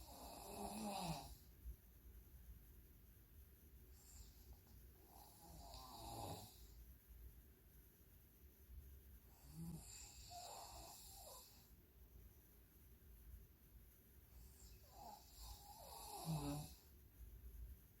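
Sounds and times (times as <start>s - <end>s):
woman snoring faintly: 0.0s - 1.4s, 14.7s - 16.8s.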